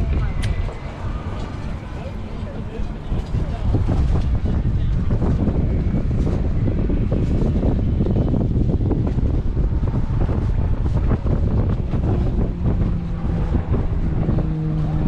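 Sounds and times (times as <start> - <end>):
boat motor hum: 0.0 - 15.0
wind buffeting microphone: 0.0 - 15.0.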